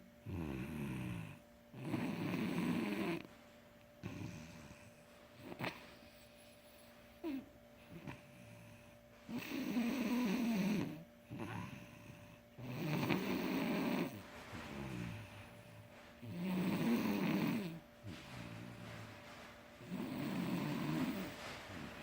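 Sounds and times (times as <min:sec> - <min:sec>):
boy snoring: 0:00.2 - 0:03.3, 0:07.2 - 0:17.8, 0:19.8 - 0:21.4
quiet breath: 0:03.2 - 0:22.0.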